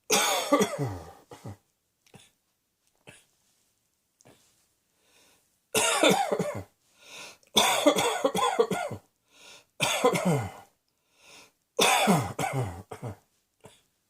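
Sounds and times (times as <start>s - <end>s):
person coughing hard: 0.1s - 1.6s, 5.8s - 6.7s, 7.6s - 9.0s, 9.8s - 10.7s, 11.8s - 13.9s.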